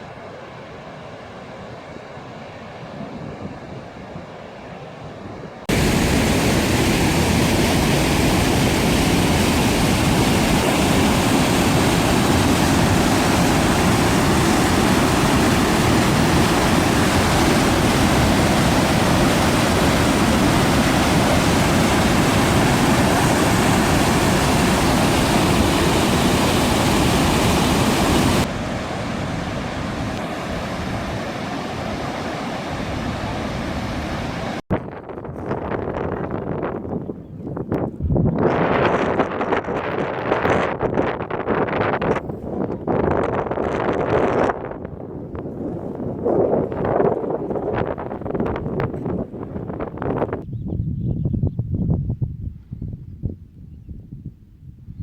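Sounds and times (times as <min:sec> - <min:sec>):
quieter water: 0:00.0 - 0:50.5
wind: 0:00.0 - 0:55.0
waterfall rushing: 0:05.7 - 0:34.6.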